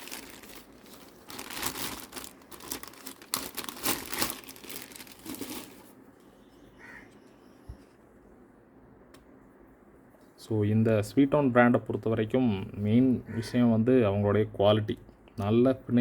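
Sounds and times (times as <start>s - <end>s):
plastic bag crinkling: 0.0s - 6.0s.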